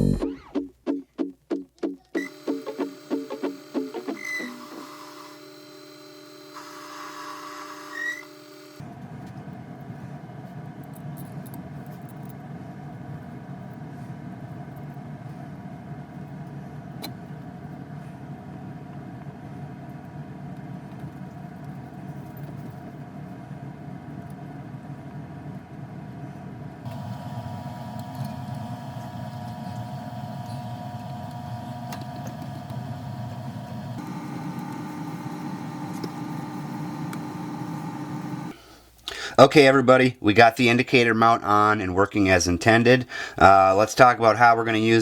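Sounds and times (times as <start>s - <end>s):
machine tool motor humming: 2.2s - 8.8s, 26.8s - 38.6s.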